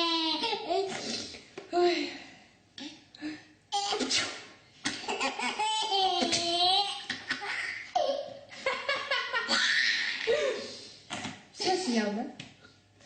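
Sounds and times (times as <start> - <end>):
baby belly-laughing: 4.9 - 8.4
baby squealing laugh: 9.2 - 10.3.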